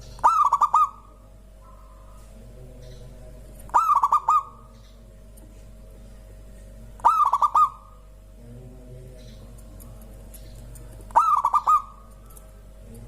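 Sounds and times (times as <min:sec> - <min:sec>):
dove cooing: 0:00.0 - 0:02.3, 0:03.7 - 0:04.8, 0:07.0 - 0:08.1, 0:11.0 - 0:12.4
faint steady hum: 0:00.0 - 0:13.0.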